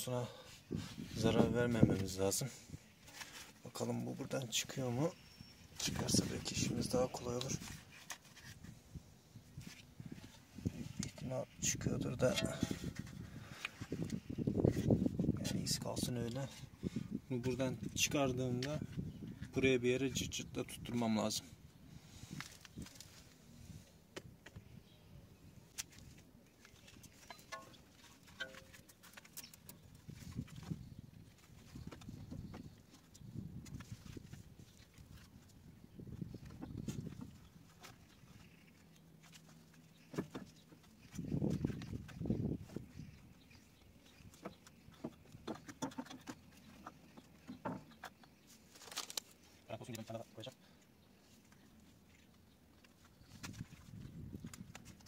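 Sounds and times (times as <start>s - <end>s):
clicks and knocks of tools handled: 26.6s - 29.8s.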